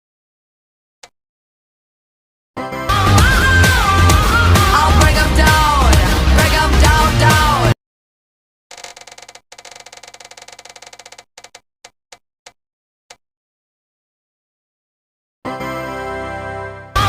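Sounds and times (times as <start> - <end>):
rapid sharp clicks slowing: 8.7 - 12.0.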